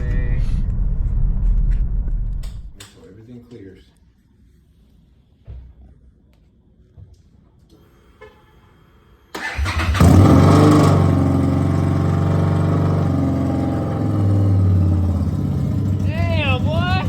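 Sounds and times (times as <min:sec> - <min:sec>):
engine starter cranking: 0:09.3 - 0:12.3
engine revving and idling: 0:09.4 - 0:17.0.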